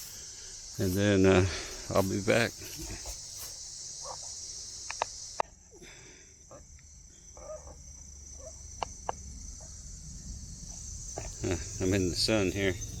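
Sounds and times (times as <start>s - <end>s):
insects chirping: 0.0s - 13.0s
sharp clicks: 4.8s - 5.5s.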